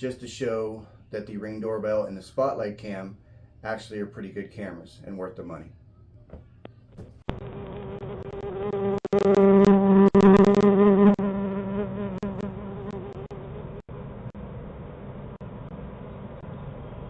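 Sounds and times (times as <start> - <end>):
steady buzzing hum: 6.3 - 17.0.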